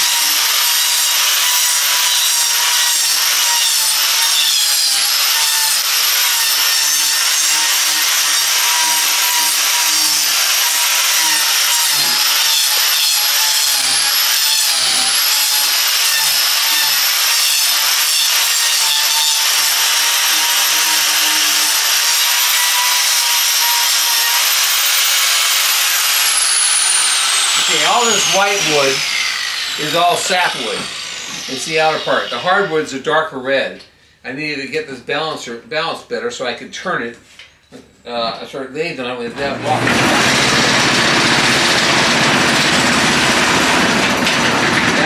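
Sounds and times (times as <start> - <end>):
power grinder grinding wood: 0.0 - 32.9, 39.4 - 45.0.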